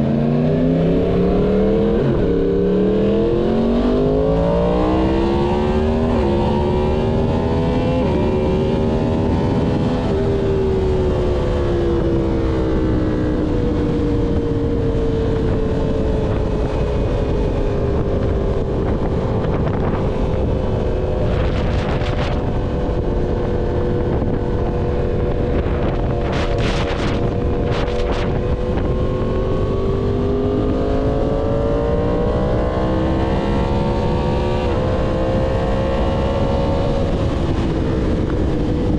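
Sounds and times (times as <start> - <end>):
motorcycle engine revving: 0.0 - 38.9
wind rushing: 13.8 - 38.9.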